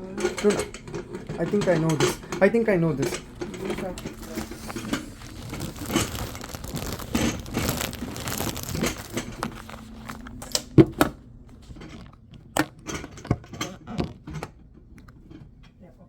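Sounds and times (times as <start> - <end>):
lid rustling and scraping: 0.0 - 15.8.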